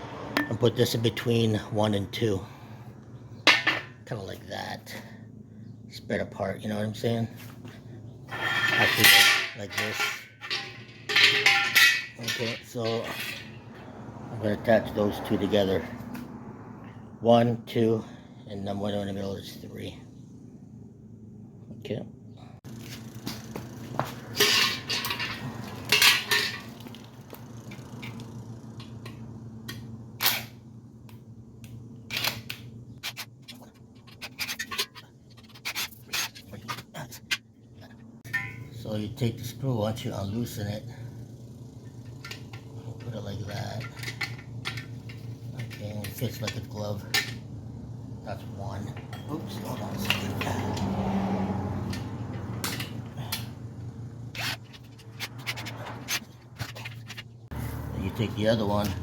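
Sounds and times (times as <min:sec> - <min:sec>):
steady low hum: 0:00.0 - 0:59.0
metal grill parts clicking: 0:08.3 - 0:13.6, 0:24.3 - 0:27.0, 0:32.1 - 0:37.4, 0:42.0 - 0:47.4, 0:51.8 - 0:53.6.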